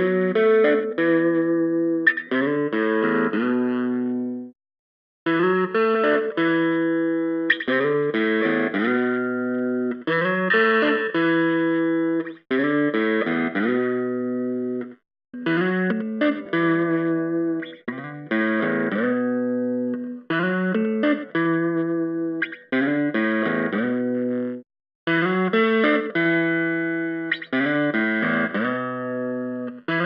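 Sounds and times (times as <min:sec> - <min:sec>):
electric guitar phrase: 0:00.0 - 0:04.5, 0:15.4 - 0:30.0.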